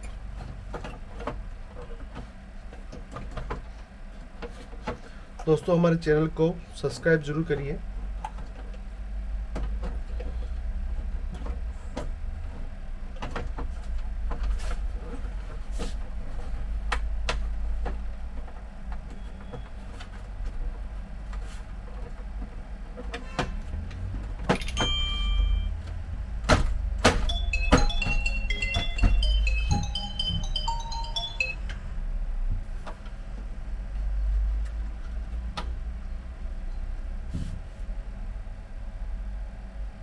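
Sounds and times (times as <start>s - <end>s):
tinkling electronic melody: 24.6s - 25.7s, 27.2s - 31.7s.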